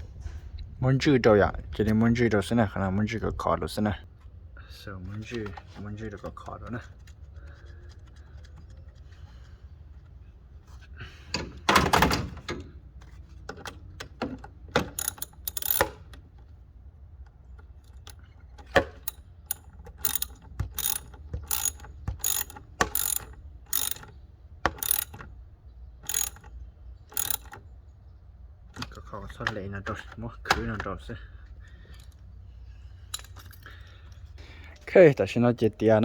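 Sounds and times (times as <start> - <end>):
metal tools clattering: 14.9 - 15.9, 33.1 - 33.9
ratchet wrench clicking: 14.9 - 16.2, 19.0 - 25.3, 26.0 - 27.6, 33.1 - 33.5.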